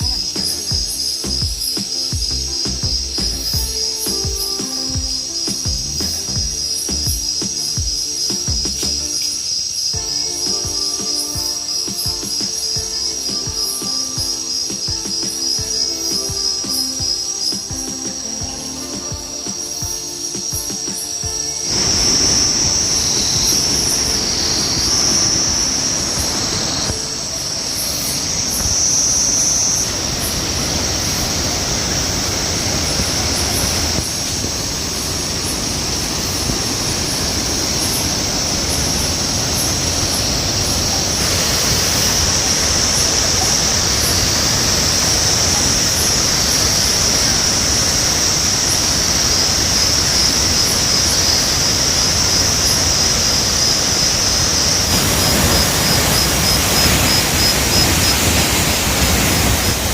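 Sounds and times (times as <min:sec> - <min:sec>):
high-pitched whine: 0:00.0 - 0:59.9
waterfall rushing: 0:00.0 - 0:59.9.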